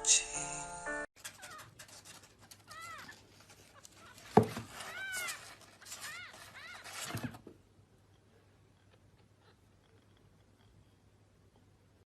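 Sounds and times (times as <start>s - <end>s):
small animal high-pitched calls: 2.6s - 7.1s.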